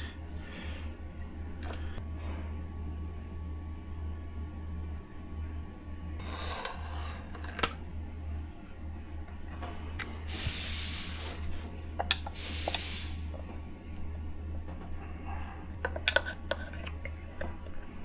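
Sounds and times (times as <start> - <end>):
steady low hum: 0.0 - 18.0
tool scraping rubber seal: 6.2 - 7.8.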